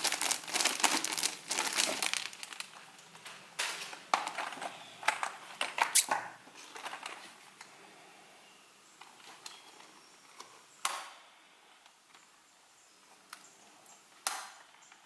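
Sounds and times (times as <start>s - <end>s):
packaging crinkling: 0.0s - 3.1s.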